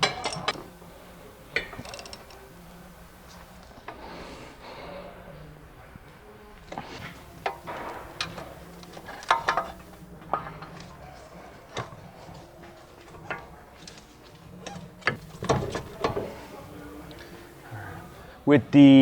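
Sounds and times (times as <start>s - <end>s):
metallic clinks and knocks: 0.0s - 3.6s, 7.1s - 12.0s.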